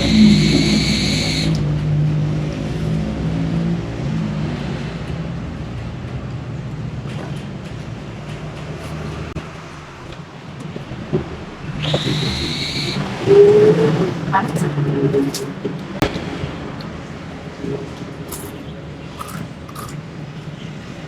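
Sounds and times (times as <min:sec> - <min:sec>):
faint clicks: 0:00.0 - 0:01.7, 0:07.1 - 0:16.2
high-pitched whine: 0:00.0 - 0:01.7, 0:11.3 - 0:19.9
vehicle engine running: 0:00.0 - 0:03.2.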